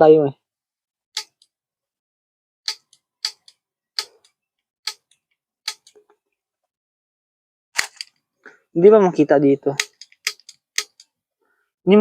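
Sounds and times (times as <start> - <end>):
piezo igniter snapping: 9.8 - 11.1.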